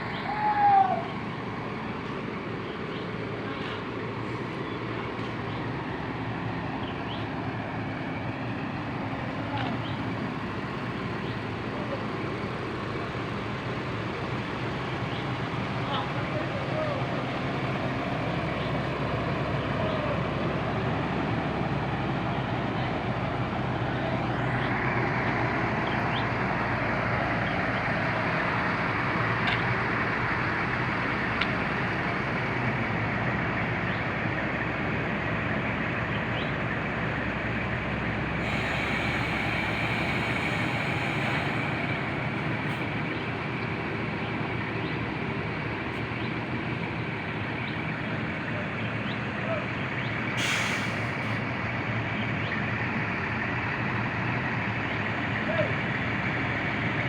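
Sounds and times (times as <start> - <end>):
engine running: 0.0 - 57.0
broad hiss: 38.4 - 42.8.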